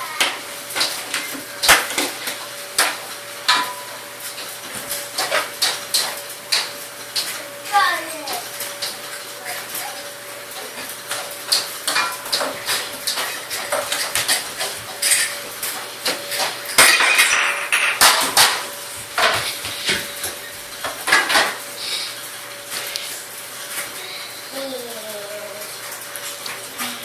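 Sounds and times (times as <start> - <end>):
dishes and utensils clattering: 0.1 - 7.4, 10.6 - 21.7.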